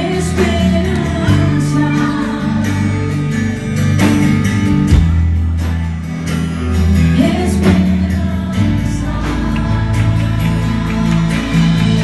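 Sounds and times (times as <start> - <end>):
bass and keyboard tones: 0.0 - 12.0
guitar strumming chords: 0.0 - 12.0.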